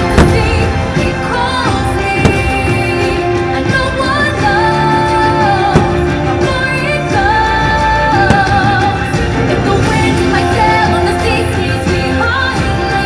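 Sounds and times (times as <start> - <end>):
firework bangs: 0.0 - 3.4, 5.6 - 6.6, 8.2 - 9.3
orchestral music with singing: 0.0 - 13.0.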